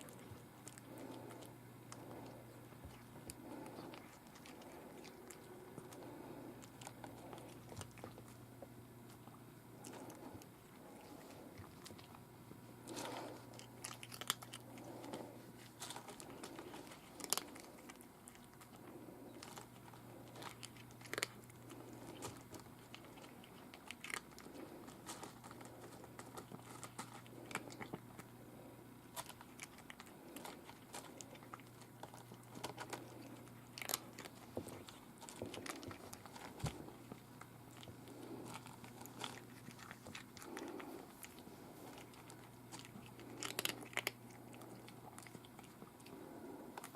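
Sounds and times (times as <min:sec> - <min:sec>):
cat crunching food: 0:00.0 - 0:46.9
steady low hum: 0:00.0 - 0:46.9.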